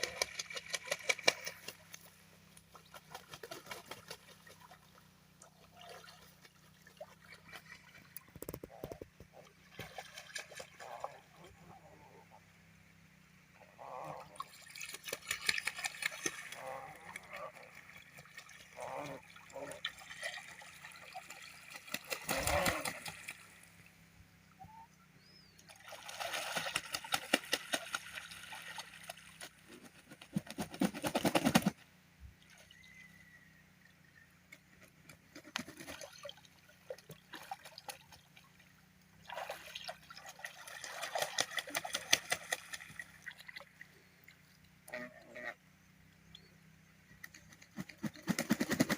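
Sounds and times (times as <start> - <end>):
geese splashing in water: 0.0 - 11.8, 13.8 - 24.0, 25.7 - 33.7, 34.9 - 45.6
faint short goose calls: 44.8 - 45.6.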